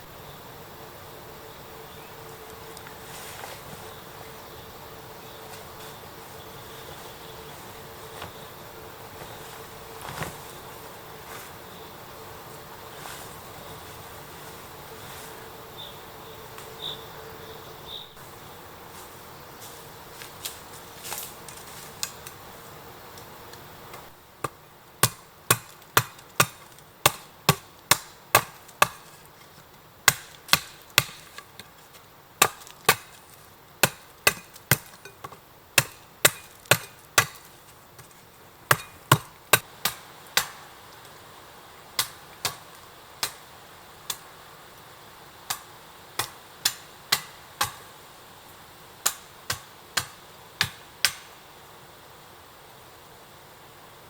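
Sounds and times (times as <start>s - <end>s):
hand tool striking wood: 24.4s - 29.2s, 30.0s - 31.7s, 32.4s - 33.2s, 33.8s - 40.6s, 46.2s - 47.8s.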